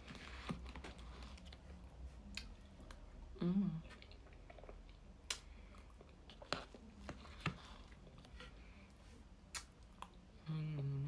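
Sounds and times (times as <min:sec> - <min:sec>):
person humming mm: 0:03.4 - 0:03.9, 0:10.4 - 0:11.0.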